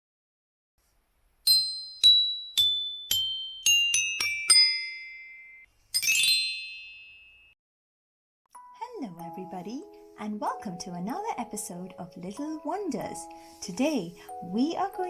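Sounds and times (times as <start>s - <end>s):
bell-like chime jingle: 1.5s - 7.6s
shimmering high chimes: 1.5s - 7.6s.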